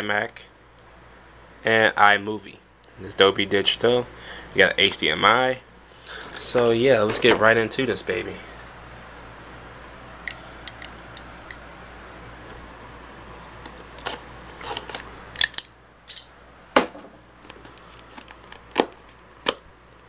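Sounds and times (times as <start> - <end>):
low steady hum: 0.0 - 20.0
cardboard packaging snapping and rustling: 14.0 - 15.6, 17.5 - 19.6.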